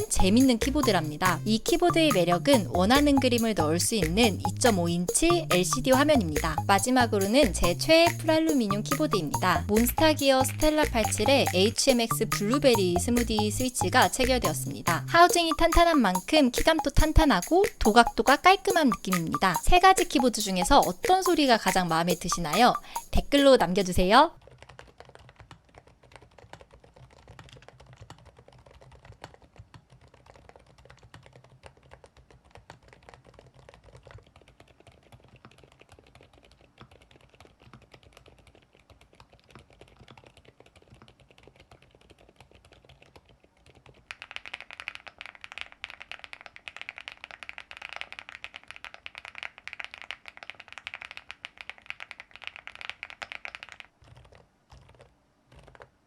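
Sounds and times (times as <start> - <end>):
muffled keyboard typing: 0.0 - 56.0
loud mechanical keyboard clacking: 24.4 - 55.9.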